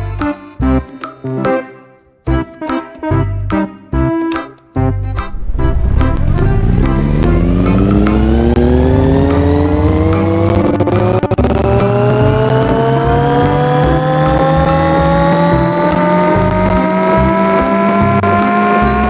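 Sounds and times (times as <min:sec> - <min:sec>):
steady low hum: 0:05.2 - 0:13.6
motor whine rising in pitch: 0:05.2 - 0:19.0.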